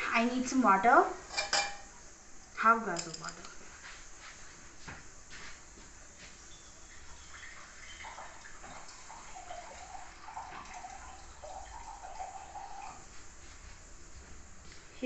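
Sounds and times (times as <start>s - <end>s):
water gurgling into a glass: 7.1s - 13.1s.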